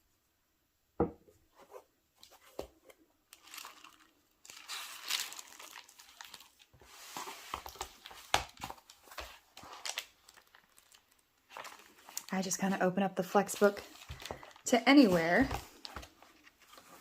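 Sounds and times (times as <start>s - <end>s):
paper rustling and pages turning: 1.6s - 12.7s, 13.4s - 17.0s.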